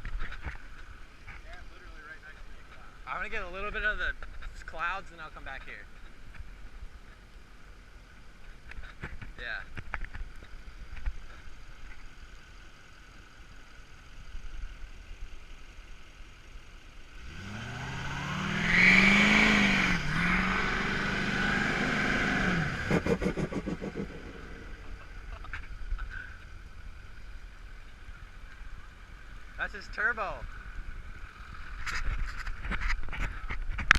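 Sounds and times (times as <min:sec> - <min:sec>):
diesel engine revving: 0:17.2 - 0:25.5
turbo fluttering chatter: 0:22.9 - 0:26.4.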